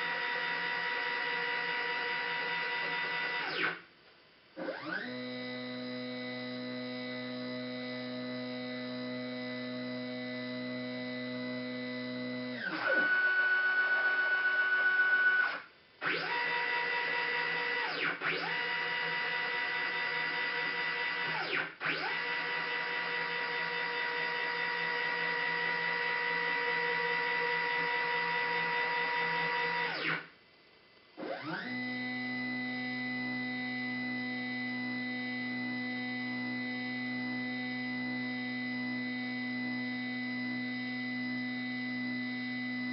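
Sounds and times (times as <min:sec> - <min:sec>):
stepper motors whining: 0:31.2 - 0:42.9.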